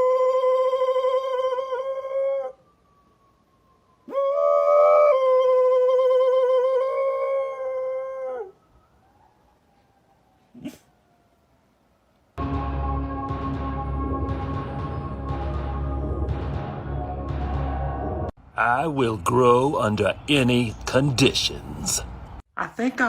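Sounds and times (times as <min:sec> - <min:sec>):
dog howling: 0:00.0 - 0:02.6, 0:04.1 - 0:08.6
music: 0:12.4 - 0:18.3.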